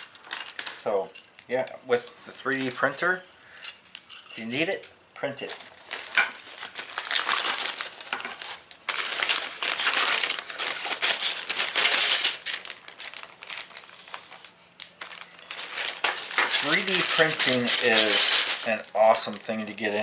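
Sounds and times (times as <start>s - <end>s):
packaging rustling and crinkling: 0.0s - 1.6s, 2.2s - 3.2s, 5.3s - 20.0s.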